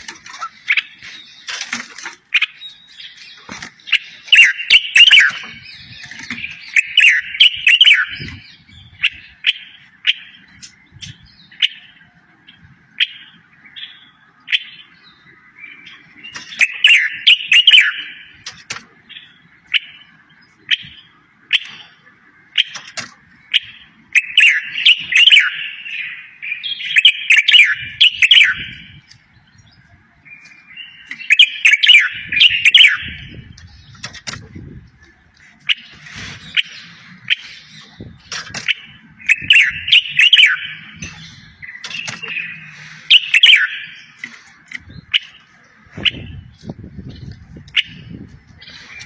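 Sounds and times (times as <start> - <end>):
songbird twittering song: 0.0 - 49.0
sharp clicks: 41.1 - 42.4.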